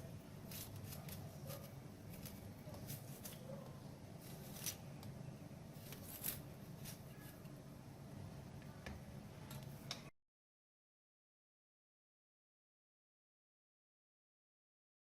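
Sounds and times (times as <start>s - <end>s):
ginger being peeled and grated: 0.0s - 5.1s, 5.7s - 7.5s.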